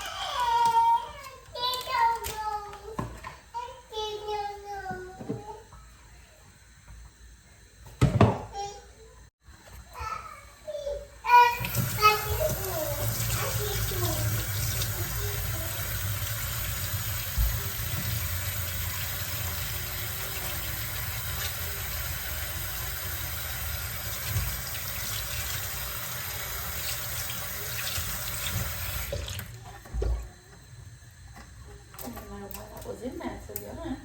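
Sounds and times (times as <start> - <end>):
water running from tap: 11.4 - 29.7.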